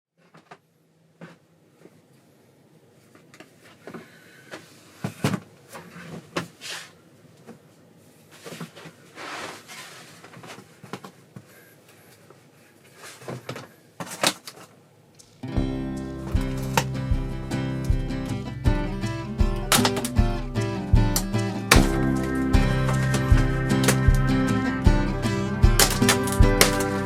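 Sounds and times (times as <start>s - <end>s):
cardboard rustling scrape: 5.1s - 7.0s, 8.2s - 10.9s.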